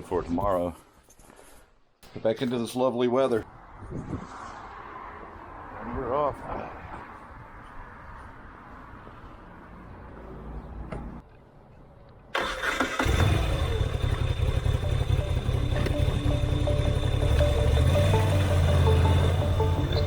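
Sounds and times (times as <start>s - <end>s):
motorcycle engine rumbling: 12.4s - 20.0s.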